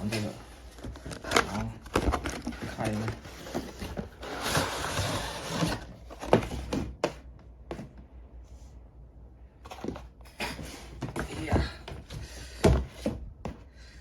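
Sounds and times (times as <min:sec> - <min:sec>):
packaging rustling and sliding: 0:00.0 - 0:06.9.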